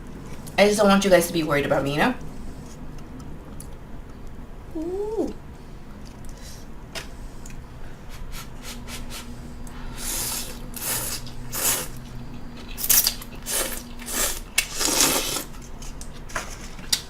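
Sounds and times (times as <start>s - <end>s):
faint low hum: 0.0s - 16.7s
noodles being slurped: 12.8s - 15.6s.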